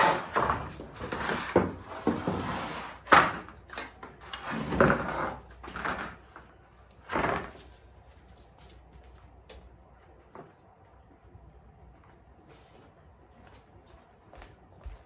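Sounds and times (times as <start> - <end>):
wooden boards scraping and knocking: 0.0 - 3.6.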